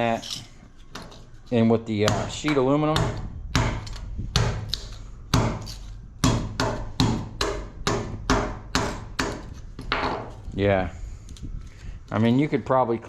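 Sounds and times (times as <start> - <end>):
hammer striking metal: 2.0 - 10.3.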